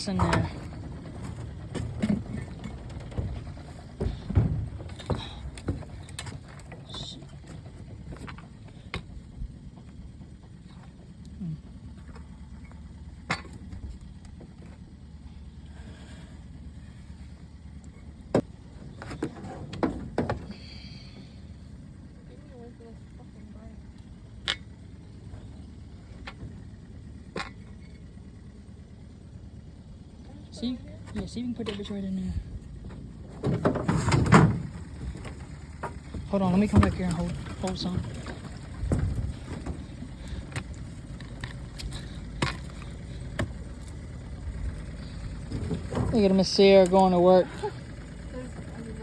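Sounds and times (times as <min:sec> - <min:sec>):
gear knocking in a boat: 0:00.0 - 0:11.0, 0:31.0 - 0:49.0
low steady rumble: 0:00.0 - 0:49.0
low rumble: 0:32.1 - 0:49.0.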